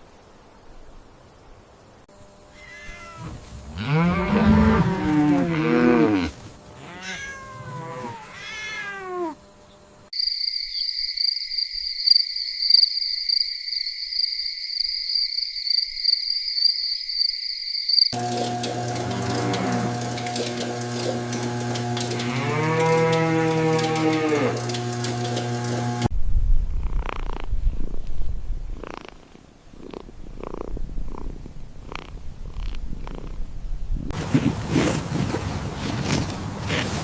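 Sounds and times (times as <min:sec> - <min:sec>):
cat meowing: 0:02.5 - 0:03.4, 0:06.8 - 0:09.4.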